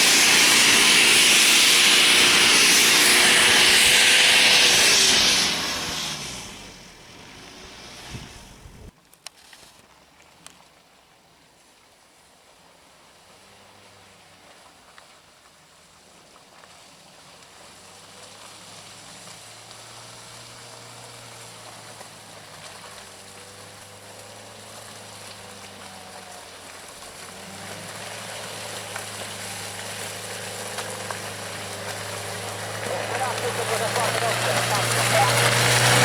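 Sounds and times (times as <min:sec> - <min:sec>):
engine running steadily: 0:00.0 - 0:08.9, 0:18.2 - 0:36.0.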